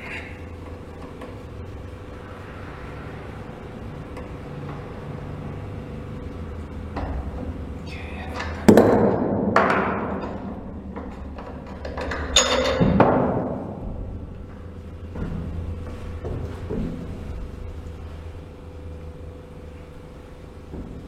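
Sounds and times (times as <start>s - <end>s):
low steady hum: 0.0s - 21.0s
ringing metal knocks: 8.7s - 13.6s.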